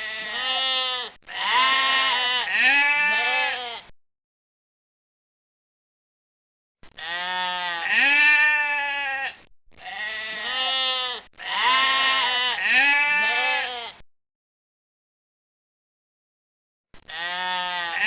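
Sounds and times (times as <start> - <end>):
goat bleating: 0.0 - 3.9, 7.0 - 14.0, 17.1 - 18.0.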